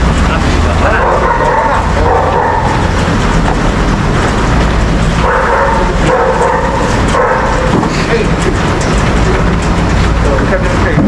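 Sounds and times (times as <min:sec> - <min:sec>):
loud low engine rumble: 0:00.0 - 0:11.0.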